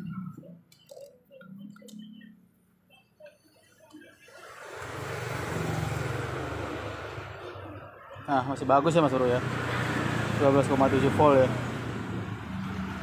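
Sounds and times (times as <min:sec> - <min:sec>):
passing vehicle engine and road noise: 0:04.4 - 0:13.0.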